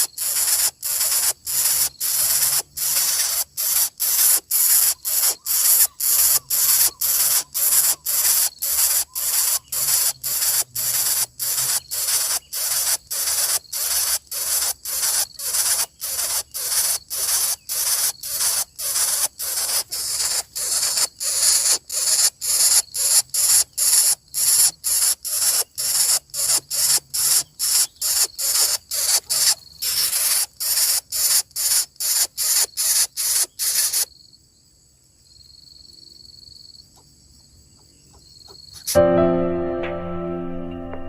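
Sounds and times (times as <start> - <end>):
bird chick hissing: 0.0 - 34.1.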